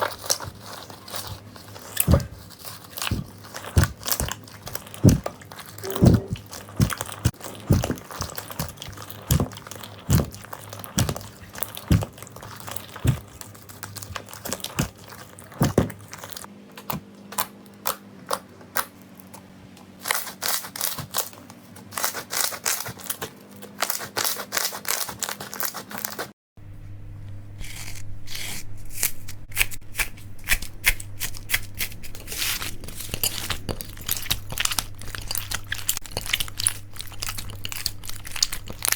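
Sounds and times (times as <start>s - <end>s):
soft low thumps: 5.8s - 6.4s
steady low hum: 26.6s - 38.9s.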